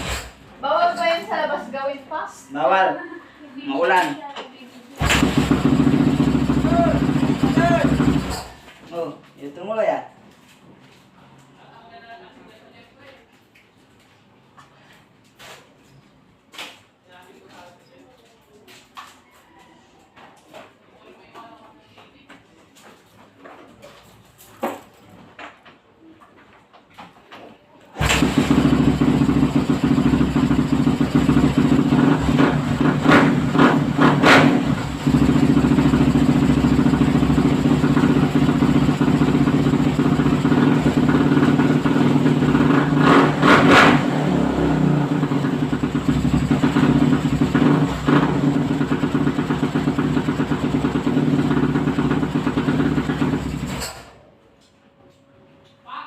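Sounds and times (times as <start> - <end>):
motorcycle engine idling: 5.0 - 8.6, 28.0 - 43.0, 45.0 - 53.8.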